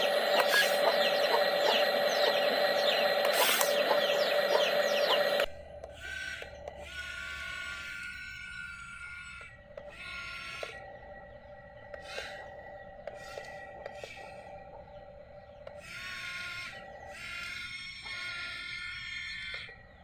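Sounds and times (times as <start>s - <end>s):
small electric motors whining: 0.0s - 11.3s, 15.6s - 20.0s.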